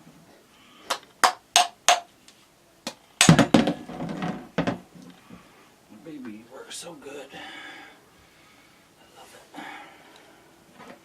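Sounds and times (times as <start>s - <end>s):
hammer striking masonry: 1.2s - 2.1s.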